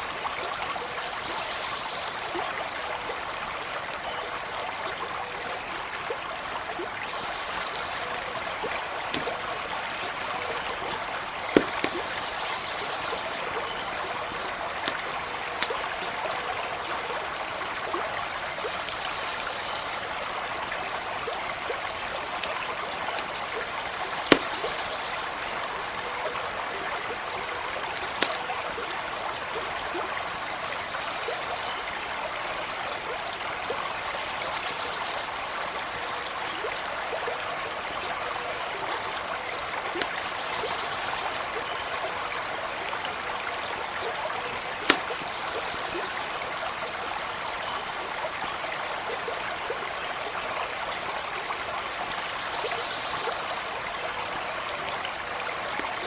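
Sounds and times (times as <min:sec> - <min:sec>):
stream running over stones: 0:00.0 - 0:56.0
campfire pops: 0:03.8 - 0:17.7, 0:22.2 - 0:30.2, 0:44.5 - 0:46.1.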